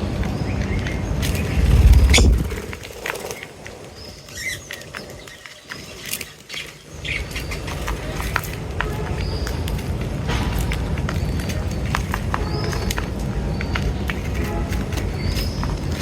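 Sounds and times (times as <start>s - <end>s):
small birds chirping: 0.0s - 16.0s
low rumble: 1.2s - 3.0s.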